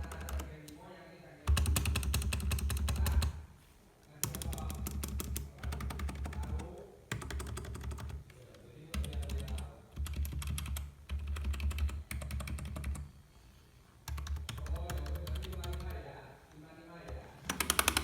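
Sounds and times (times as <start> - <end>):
keyboard typing: 0.0 - 0.8, 1.5 - 3.4, 4.2 - 13.1, 14.0 - 16.0, 17.1 - 18.0.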